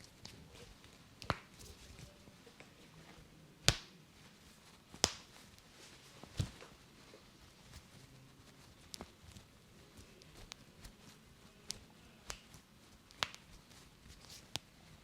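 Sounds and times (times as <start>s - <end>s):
sharp snaps from neck massage: 5.0s - 5.4s, 11.7s - 13.6s.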